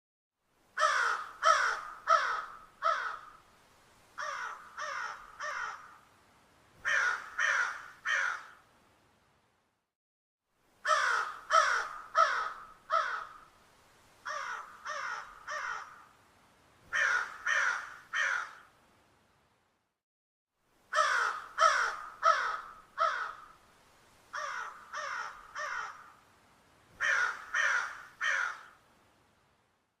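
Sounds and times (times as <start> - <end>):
crow cawing: 0.8 - 3.4, 4.2 - 6.0, 6.8 - 8.6, 10.8 - 13.5, 14.2 - 16.1, 16.9 - 18.7, 20.9 - 23.6, 24.3 - 26.2, 27.0 - 28.8.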